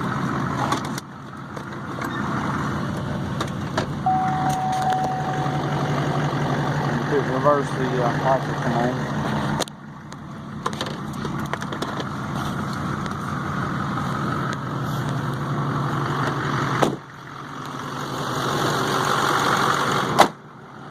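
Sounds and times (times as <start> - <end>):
diesel engine idling: 0.0 - 20.9.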